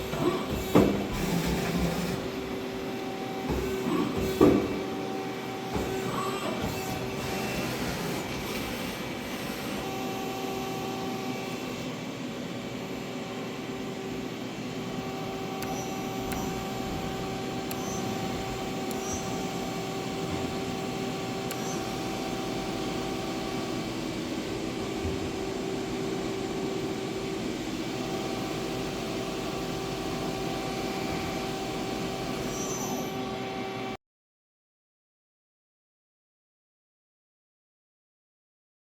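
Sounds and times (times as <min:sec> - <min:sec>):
lathe mechanical whine: 0:00.0 - 0:34.0.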